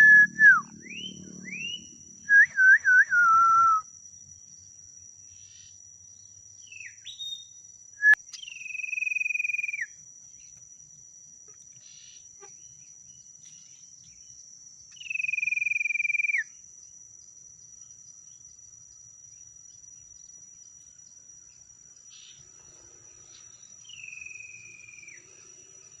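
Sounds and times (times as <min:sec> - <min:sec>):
long whistled notes: 0:00.0 - 0:03.8
short rising chirps: 0:00.0 - 0:03.8.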